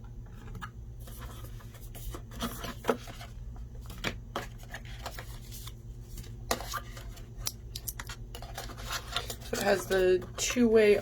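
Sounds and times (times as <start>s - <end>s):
low steady hum: 0.0s - 11.0s.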